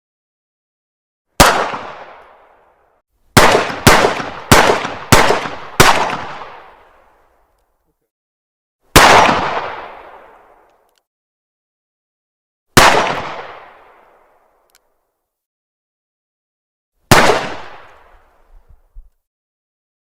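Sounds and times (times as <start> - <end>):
pistol gunshots with echo: 1.4 - 2.6, 3.4 - 7.0, 8.9 - 10.7, 12.8 - 14.4, 17.1 - 18.3.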